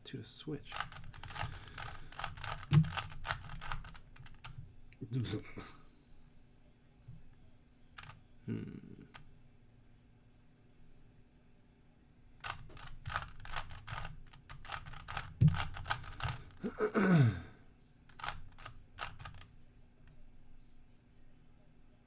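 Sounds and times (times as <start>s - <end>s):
plastic puzzle cube clicking: 0.7s - 4.5s, 12.4s - 16.6s, 18.1s - 19.5s.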